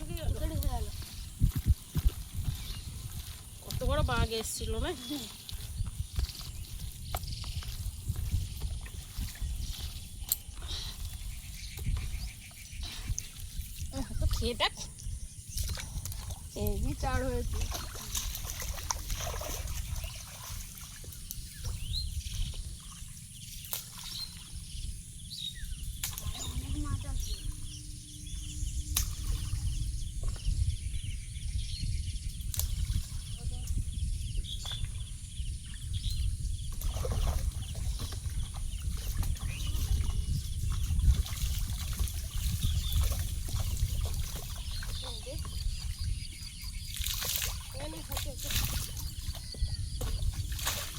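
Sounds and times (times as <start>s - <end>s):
water sloshing and splashing: 0.0s - 25.1s, 25.8s - 30.7s, 32.4s - 34.0s, 34.6s - 50.9s
faint bird chirps: 9.0s - 40.7s, 42.3s - 50.9s
rising bird chirp: 21.4s - 36.8s
steady low rumble: 24.2s - 46.9s.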